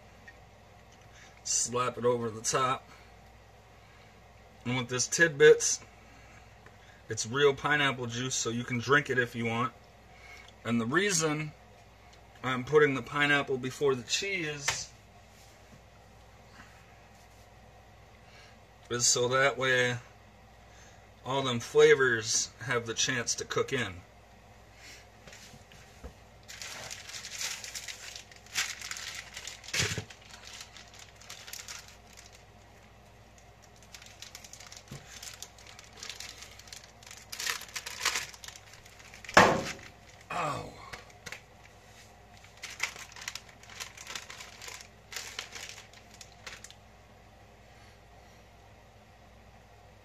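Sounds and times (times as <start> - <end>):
plastic packaging crinkling: 26.4 - 40.3, 40.9 - 46.8.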